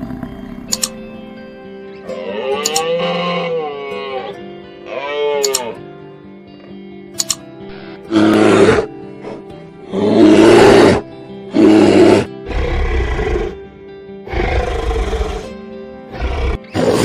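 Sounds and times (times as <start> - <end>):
big cat roaring: 0.0 - 0.8, 8.1 - 13.6, 14.2 - 17.0
background music with held notes: 0.0 - 17.0.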